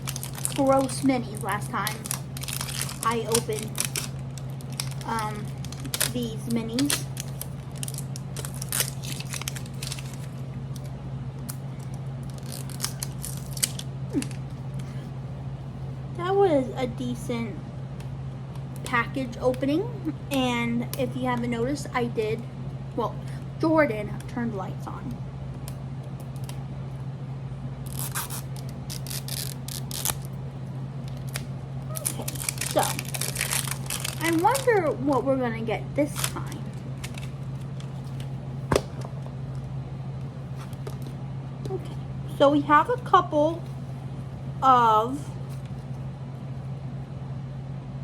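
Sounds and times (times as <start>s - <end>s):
plastic packaging tearing: 0.0s - 15.0s, 27.8s - 30.4s, 31.0s - 34.8s, 36.1s - 39.1s
steady low hum: 0.0s - 48.0s.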